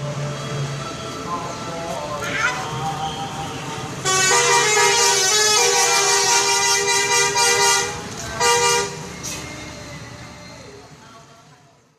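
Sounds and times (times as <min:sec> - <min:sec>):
multi-tone musical bus horn: 0:02.3 - 0:09.4.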